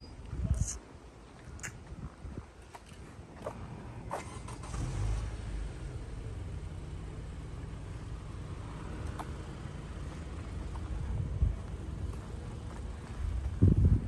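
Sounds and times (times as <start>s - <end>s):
vehicle engine running: 3.4s - 14.0s.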